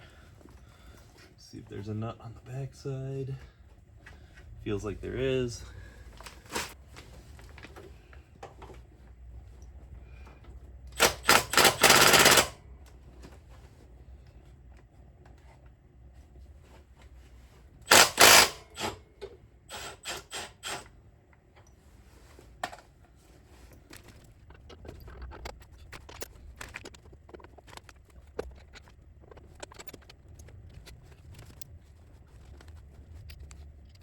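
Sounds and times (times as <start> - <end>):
impact tool hammering on bolt: 11.0 - 12.5, 17.9 - 19.0.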